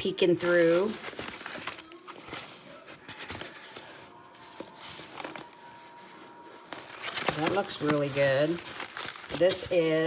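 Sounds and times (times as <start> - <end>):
plastic wrapping rustling: 0.1 - 10.0.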